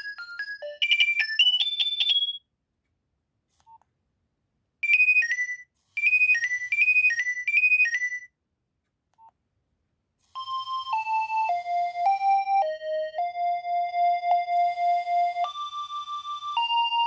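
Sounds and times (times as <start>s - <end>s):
high warbling ringtone: 0.0s - 2.4s
ringtone melody over pulsing beat: 0.0s - 2.4s, 4.8s - 8.3s, 10.4s - 17.0s.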